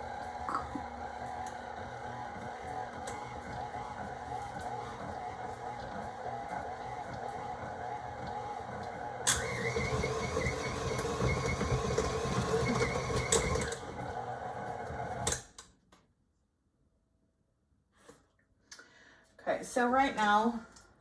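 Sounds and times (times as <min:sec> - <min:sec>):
stand mixer beating dough: 0:00.0 - 0:15.4.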